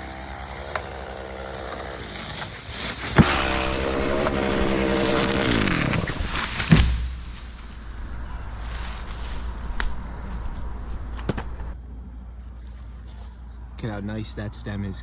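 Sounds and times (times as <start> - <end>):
chainsaw revving: 0.0 - 6.6.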